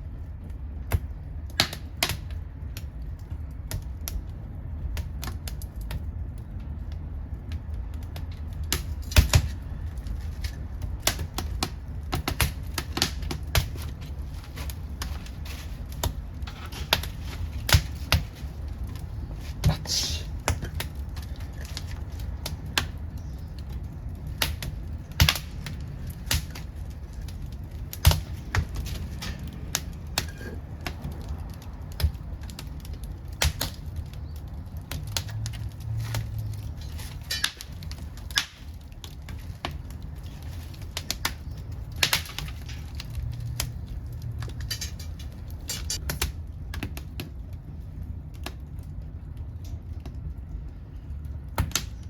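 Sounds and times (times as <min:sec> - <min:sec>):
low rumble of flames: 0:00.0 - 0:52.0
wood fire crackling and popping: 0:00.0 - 0:52.0.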